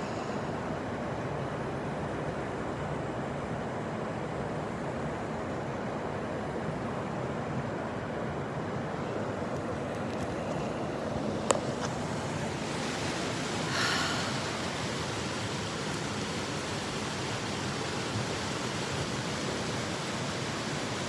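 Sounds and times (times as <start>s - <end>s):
wind hiss: 10.8s - 21.0s.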